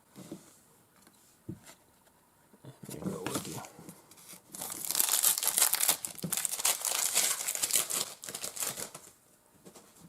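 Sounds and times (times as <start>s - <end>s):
wrapper crinkling and tearing: 4.5s - 9.2s.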